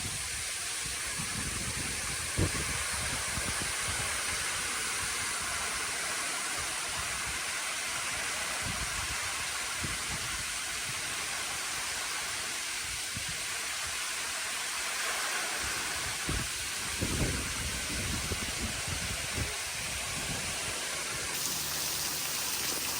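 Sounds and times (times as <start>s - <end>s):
waterfall rushing: 21.3s - 22.9s.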